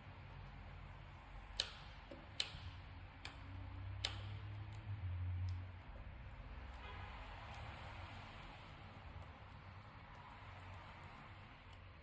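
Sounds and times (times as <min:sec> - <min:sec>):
screwdriver ticking on screw: 0:01.6 - 0:04.9, 0:07.4 - 0:12.0.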